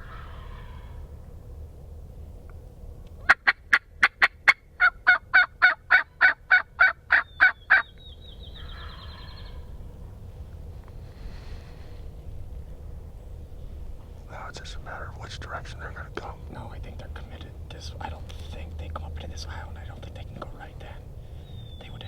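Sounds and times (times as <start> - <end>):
turkey calls: 0.0 - 1.2, 3.1 - 10.0, 13.6 - 22.0.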